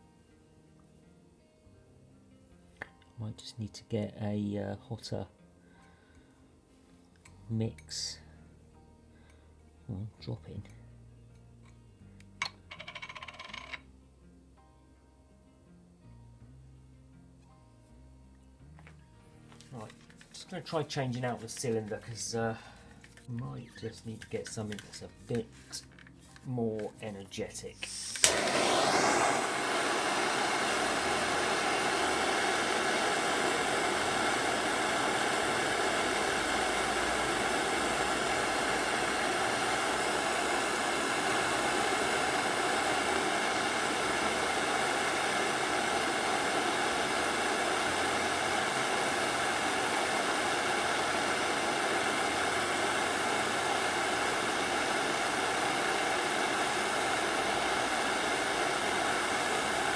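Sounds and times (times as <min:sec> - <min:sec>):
blowtorch hissing: 0:27.8 - 0:59.9.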